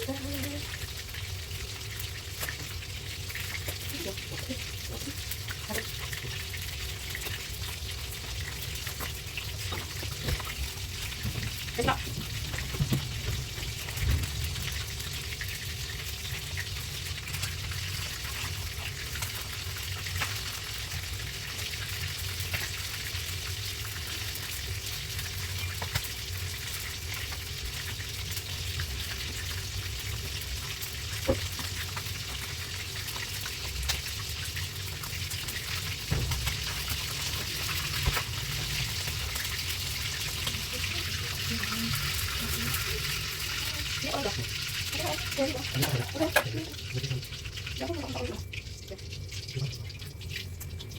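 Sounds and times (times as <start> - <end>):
food sizzling in a pan: 0.0 - 50.9.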